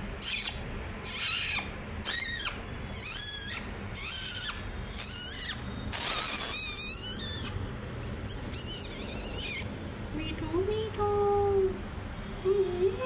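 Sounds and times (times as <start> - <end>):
parrot screechy calls: 0.2 - 7.6, 8.3 - 9.7.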